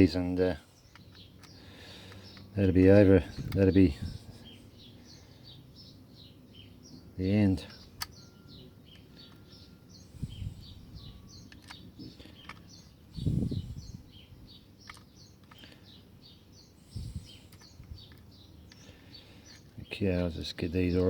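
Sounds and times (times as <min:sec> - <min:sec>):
birds chirping: 0:00.0 - 0:21.0
light metal clicks: 0:17.3 - 0:19.8.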